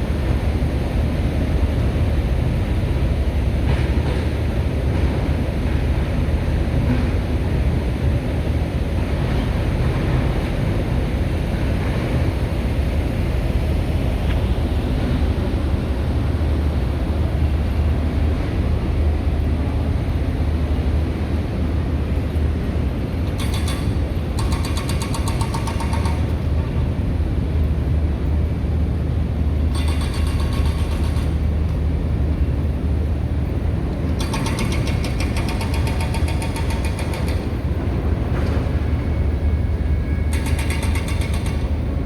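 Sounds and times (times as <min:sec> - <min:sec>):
heavy engine running: 0:00.0 - 0:42.0
rapid mechanical hammering: 0:23.4 - 0:26.3, 0:29.8 - 0:31.4, 0:34.2 - 0:37.5, 0:40.3 - 0:41.7.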